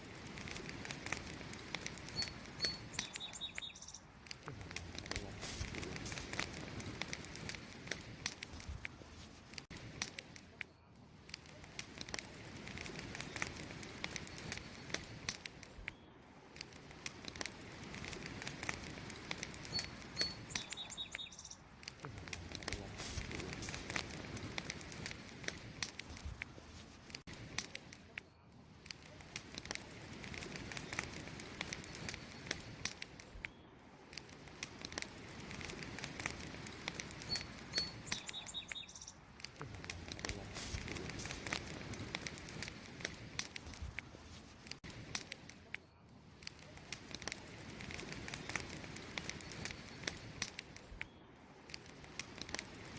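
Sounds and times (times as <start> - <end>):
campfire crackling: 0.0 - 52.9
high chirp: 2.1 - 4.1, 37.2 - 39.2.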